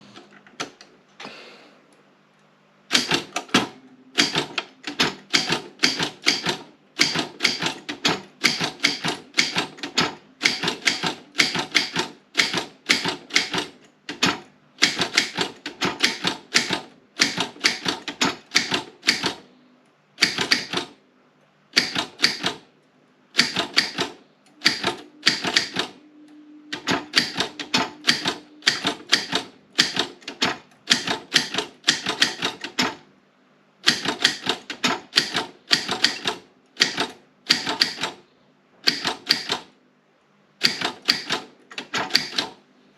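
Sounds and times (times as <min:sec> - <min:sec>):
typewriter keystroke clacks: 0:02.9 - 0:19.4, 0:20.2 - 0:21.0, 0:21.8 - 0:22.6, 0:23.4 - 0:26.0, 0:26.7 - 0:33.0, 0:33.8 - 0:38.2, 0:38.8 - 0:39.7, 0:40.6 - 0:42.6.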